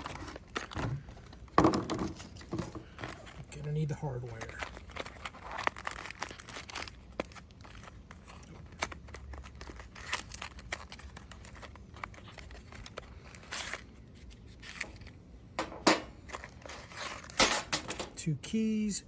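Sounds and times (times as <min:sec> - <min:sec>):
plastic packaging crinkling and tearing: 0:00.0 - 0:15.5, 0:16.2 - 0:17.4.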